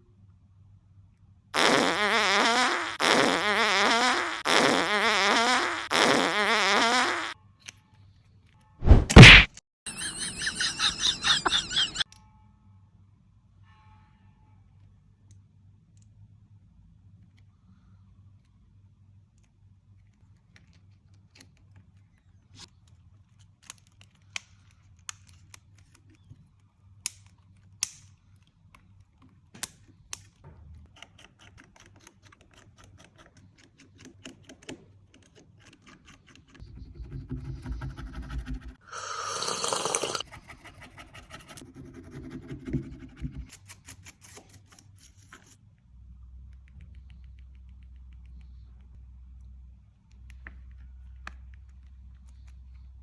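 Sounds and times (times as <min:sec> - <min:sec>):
short loud noise burst: 0:08.8 - 0:09.6.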